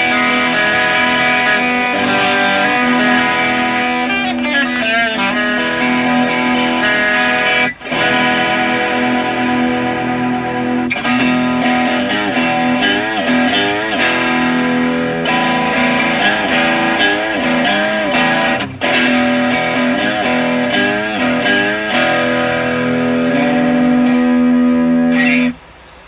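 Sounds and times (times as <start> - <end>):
overdriven electric guitar chords: 0.0 - 26.0.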